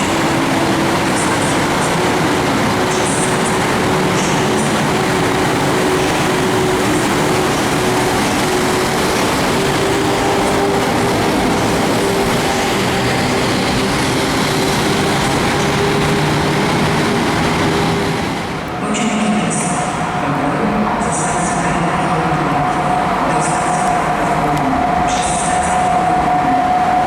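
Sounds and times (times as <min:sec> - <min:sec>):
train rail rumble: 0:00.0 - 0:27.0.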